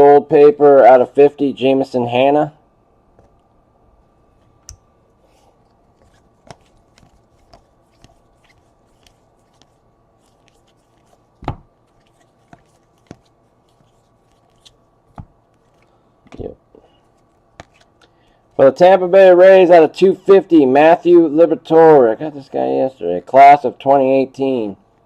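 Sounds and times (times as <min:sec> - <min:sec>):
trading cards and plastic sleeves rustling: 0:05.3 - 0:18.6.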